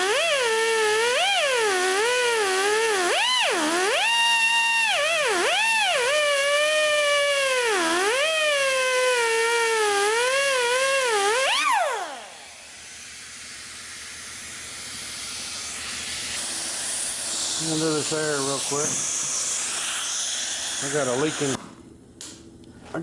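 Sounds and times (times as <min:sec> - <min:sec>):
air cutoff wheel whining: 0:00.0 - 0:22.4
compressed air hissing: 0:12.3 - 0:21.6.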